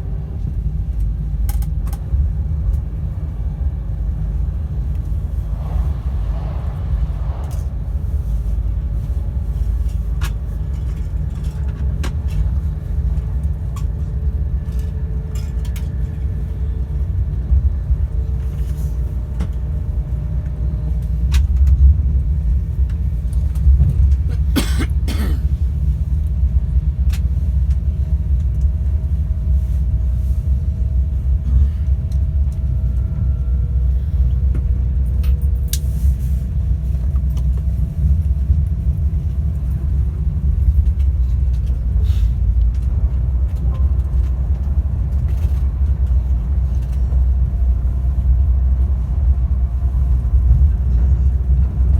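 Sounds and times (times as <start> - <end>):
train running gear rumble: 0.0 - 51.9
rushing burst: 5.1 - 9.3.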